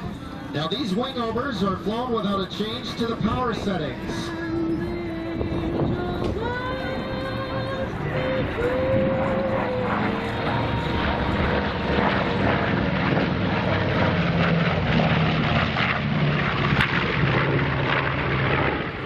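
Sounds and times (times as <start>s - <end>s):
aircraft radial engines droning: 0.0s - 19.0s.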